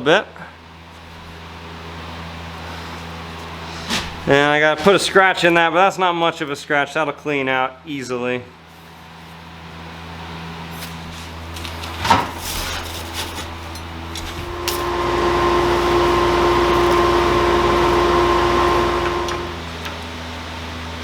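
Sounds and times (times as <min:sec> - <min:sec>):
electric machine motor humming: 0:14.0 - 0:19.8
machine whine and hiss: 0:14.2 - 0:19.7.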